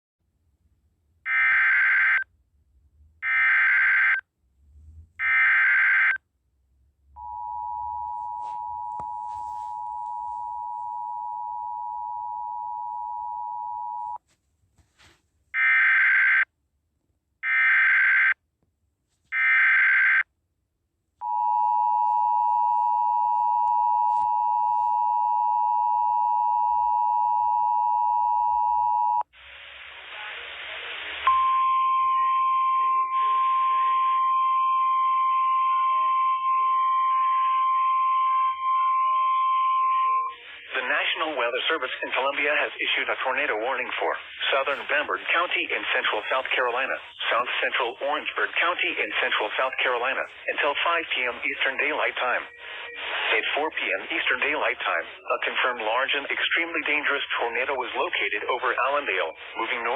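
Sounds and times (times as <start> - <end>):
two-tone attention signal: 31.3 - 40.4.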